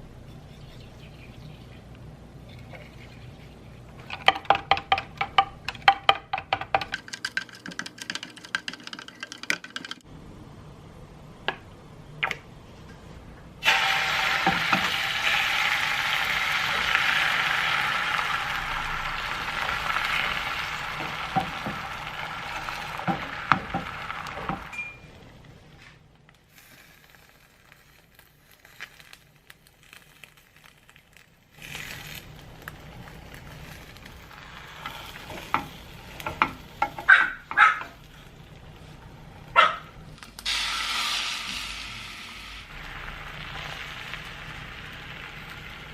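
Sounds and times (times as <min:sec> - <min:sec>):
food sizzling in a hot pan: 0:13.6 - 0:24.8, 0:26.5 - 0:37.0, 0:40.4 - 0:45.9.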